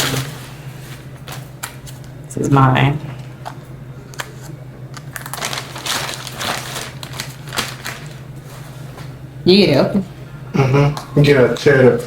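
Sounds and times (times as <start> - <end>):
packaging crinkling and crunching: 3.4 - 8.7.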